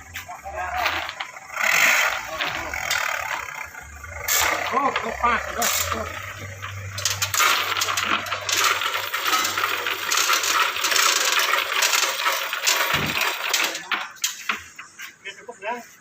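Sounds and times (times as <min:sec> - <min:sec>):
low motor hum: 0:00.0 - 0:11.8
metal lathe clinking and rattling: 0:00.5 - 0:15.0.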